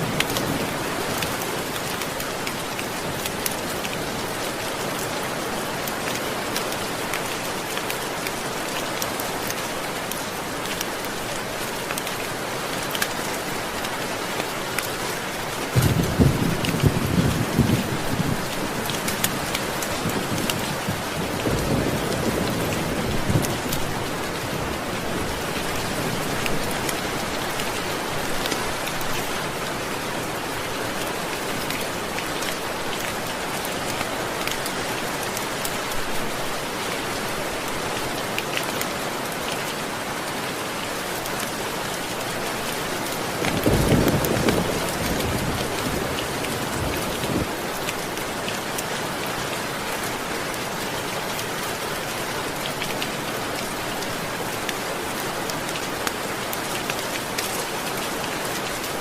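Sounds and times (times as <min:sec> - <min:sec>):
steady rain falling: 0:00.0 - 0:59.0
low thunder rumbles: 0:15.8 - 0:18.5, 0:43.5 - 0:47.6.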